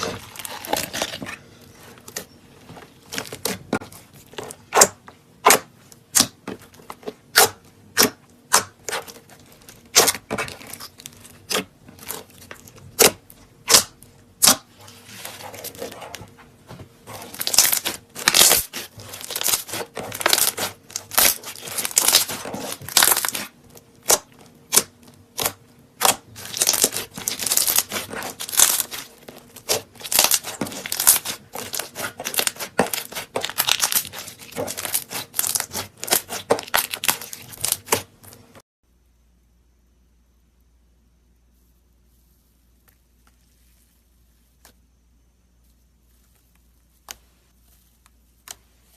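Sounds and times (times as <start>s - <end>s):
slime popping and crackling: 9.9s - 16.2s, 17.1s - 38.2s.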